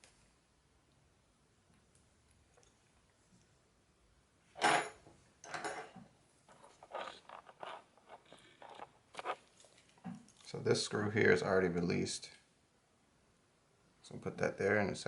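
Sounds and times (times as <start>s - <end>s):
soft clicks and rustles: 0.0s - 3.6s, 5.0s - 10.7s
tool scraping: 4.6s - 9.5s.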